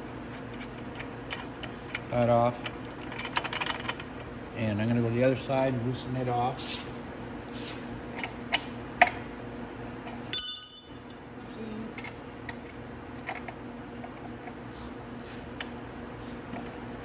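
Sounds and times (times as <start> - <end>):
ringing metallic clang: 10.3 - 11.1
metal hand tools clinking: 10.4 - 11.0.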